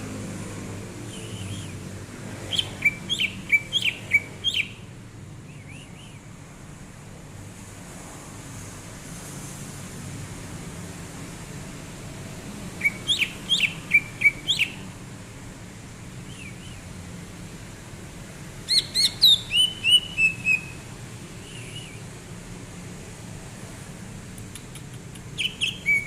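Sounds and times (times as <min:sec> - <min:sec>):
bird chirping and warbling: 0:02.5 - 0:04.8, 0:12.8 - 0:14.9, 0:18.6 - 0:20.8, 0:25.2 - 0:26.0.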